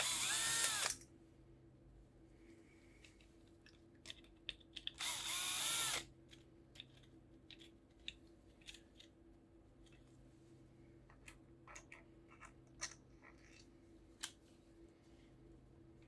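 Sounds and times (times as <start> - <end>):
cordless drill whirring: 0.0 - 1.0, 5.0 - 6.0.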